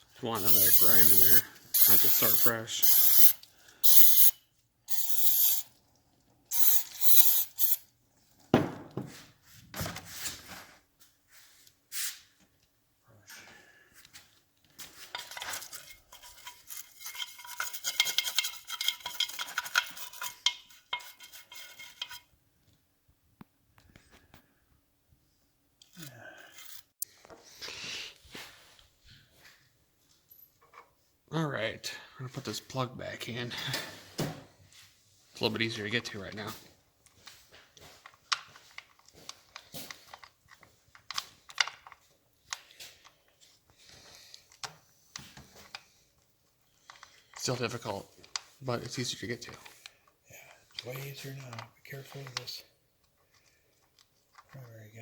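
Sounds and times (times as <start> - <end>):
scrubbing against metal: 0.4 - 4.3, 15.2 - 22.2.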